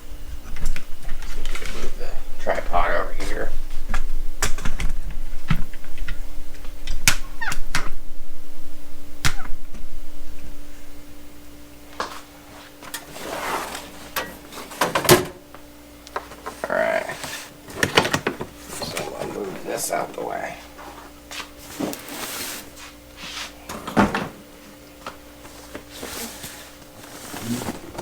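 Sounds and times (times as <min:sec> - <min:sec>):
rustling: 0:25.4 - 0:28.0.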